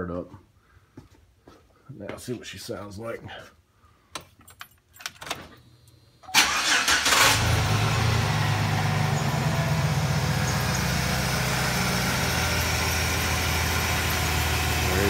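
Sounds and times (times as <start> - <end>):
engine starter cranking: 6.3 - 8.2
engine idling: 6.4 - 15.0.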